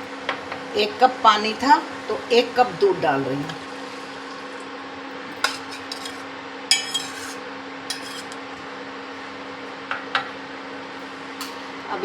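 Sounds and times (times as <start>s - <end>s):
metal utensils clinking on pot: 5.4s - 8.4s.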